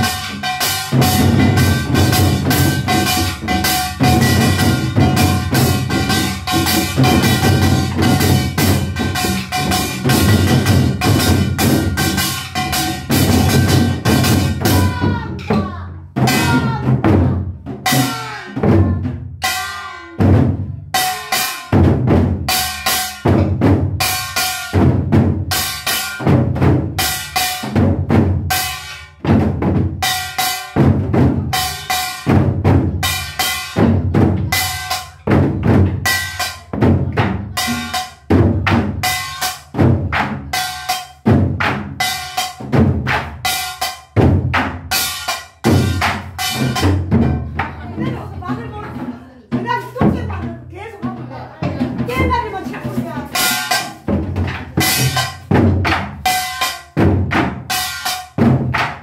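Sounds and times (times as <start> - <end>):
pitched musical accompaniment: 0.0 - 15.6
drums beaten with sticks: 0.0 - 59.0.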